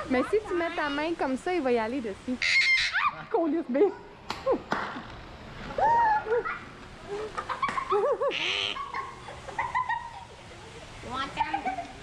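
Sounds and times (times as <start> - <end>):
bird calling: 2.4 - 3.3, 7.2 - 9.2.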